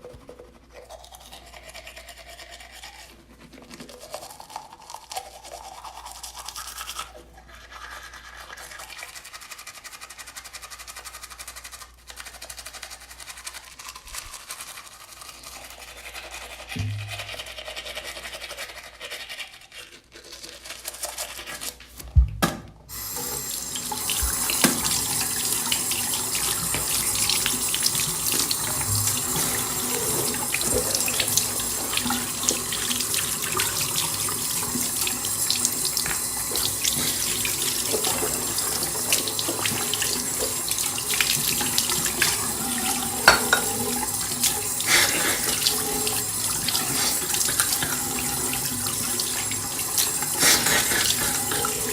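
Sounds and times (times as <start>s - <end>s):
tap running into sink: 16.8s - 17.3s, 22.1s - 32.9s, 35.5s - 49.2s.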